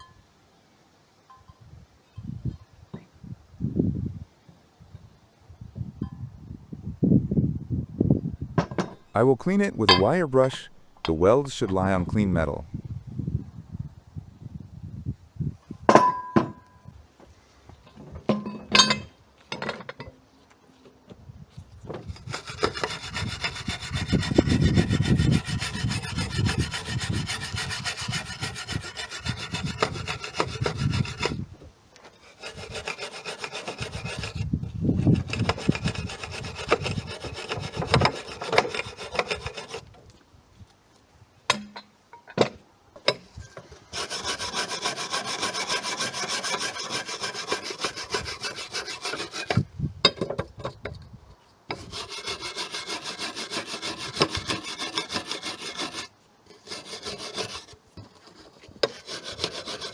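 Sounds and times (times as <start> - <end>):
metallic knocks and clinks: 18.3 - 20.1
wire brush scraping metal: 21.9 - 40.0, 43.2 - 49.6, 51.7 - 59.9.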